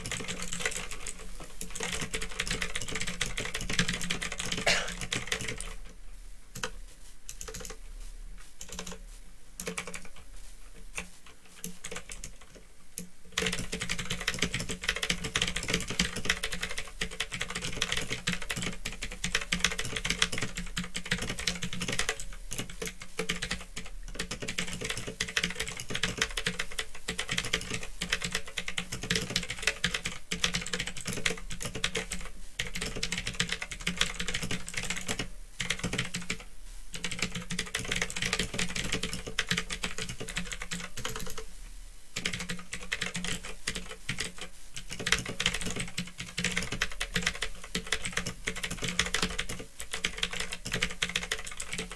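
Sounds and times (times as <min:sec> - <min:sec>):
typing on clicky keyboard: 0:00.0 - 0:05.8, 0:06.6 - 0:07.8, 0:08.6 - 0:09.0, 0:09.6 - 0:10.2, 0:11.0 - 0:41.4, 0:42.2 - 0:51.9.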